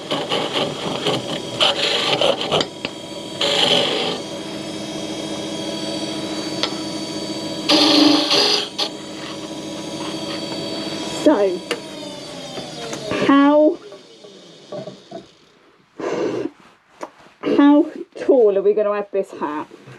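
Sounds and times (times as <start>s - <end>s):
turning tool rasping cuts: 0.0s - 15.6s
wood lathe humming: 0.0s - 15.6s.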